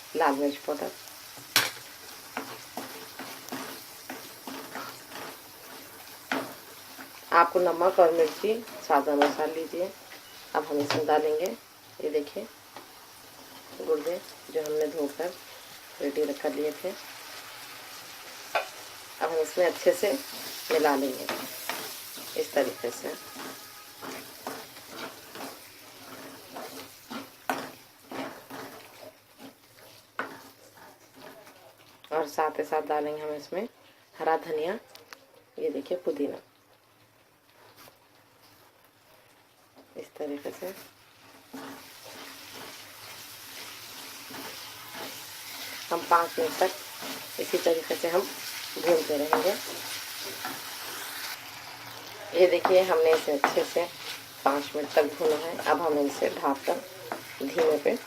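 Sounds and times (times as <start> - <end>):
low sizzle of frying: 0.0 - 58.0
utensil scraping a pan: 2.4 - 9.5, 19.8 - 31.6, 40.6 - 51.4, 52.4 - 58.0.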